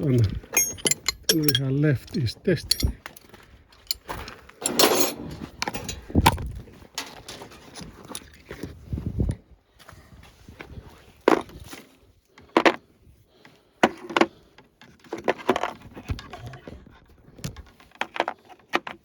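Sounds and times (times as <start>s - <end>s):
hand tools knocking and clattering: 0.0s - 3.2s, 3.9s - 7.4s.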